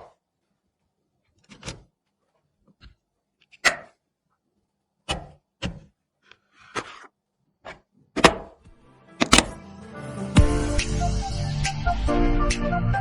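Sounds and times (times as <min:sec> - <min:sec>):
computer parts clicking and knocking: 0:08.2 - 0:09.6.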